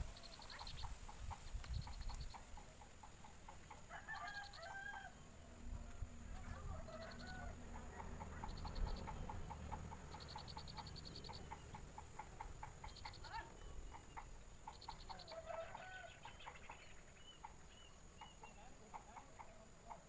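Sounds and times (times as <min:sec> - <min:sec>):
buzzy bird trills: 0:00.0 - 0:02.8, 0:06.8 - 0:19.6
rising and falling bird calls: 0:00.0 - 0:19.6.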